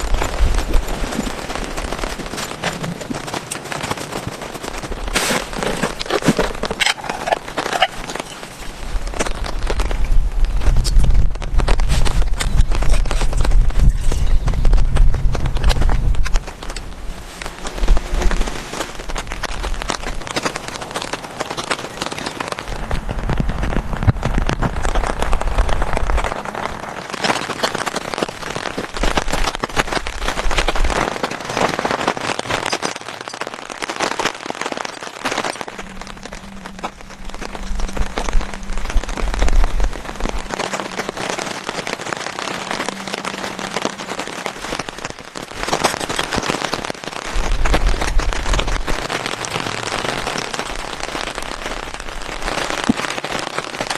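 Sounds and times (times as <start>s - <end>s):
heavy rain falling: 0.0s - 53.9s
low rumble: 8.7s - 20.3s, 22.6s - 27.1s, 35.7s - 45.7s.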